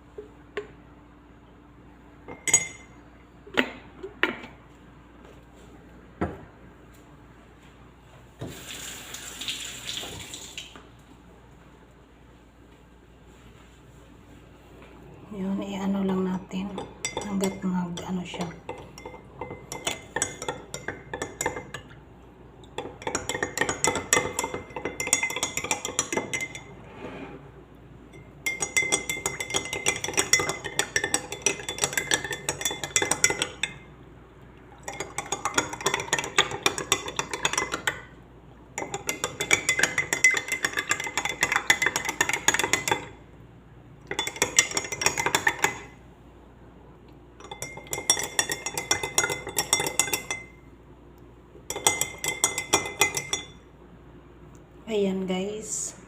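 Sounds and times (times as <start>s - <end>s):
spoon clinking against glass: 2.3s - 2.9s, 18.7s - 21.8s, 23.0s - 26.7s, 28.1s - 33.8s, 38.8s - 43.1s, 44.1s - 45.9s, 47.4s - 50.6s, 51.7s - 53.6s.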